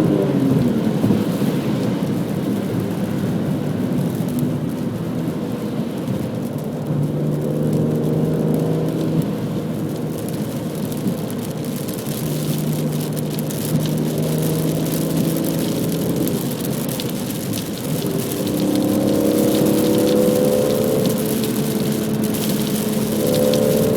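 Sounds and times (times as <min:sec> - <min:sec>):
tyre and road noise: 0:00.0 - 0:23.9
car engine running: 0:08.3 - 0:23.9.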